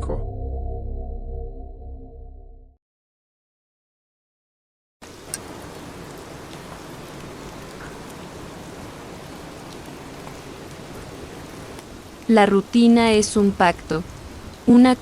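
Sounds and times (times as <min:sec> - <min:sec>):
steady rain falling: 0:05.0 - 0:15.0.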